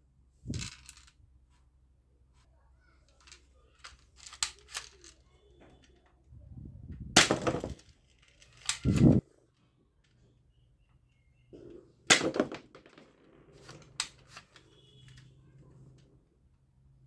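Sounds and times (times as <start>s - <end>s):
loud toy gun shots: 7.2s - 7.8s, 12.1s - 12.7s
toy gun clicks: 8.2s - 9.0s.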